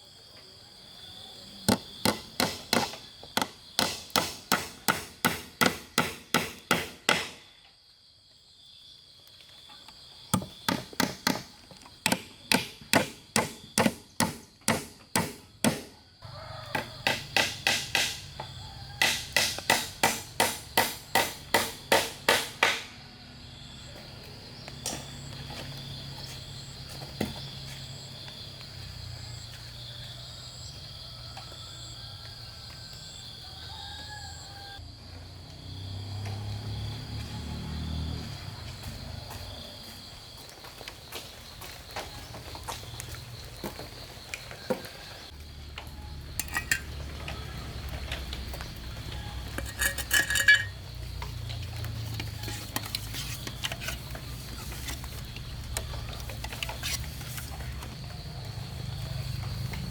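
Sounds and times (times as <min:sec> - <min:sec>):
insects chirring: 0:00.0 - 0:59.9
hand tool striking wood: 0:01.7 - 0:07.4, 0:10.4 - 0:16.0, 0:16.7 - 0:18.4, 0:19.0 - 0:22.9, 0:46.4 - 0:47.0, 0:49.6 - 0:50.8.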